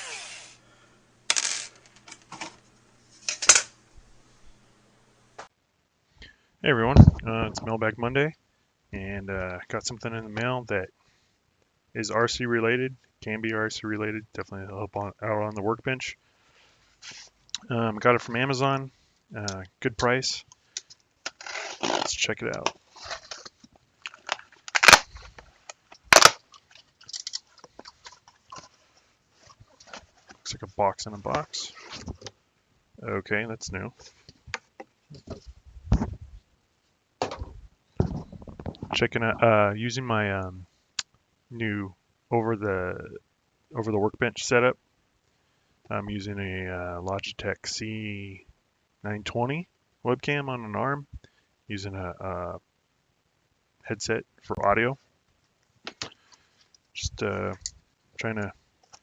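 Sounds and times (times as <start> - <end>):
cardboard rustling: 22.7 - 30.5
cardboard ripping: 24.7 - 25.2.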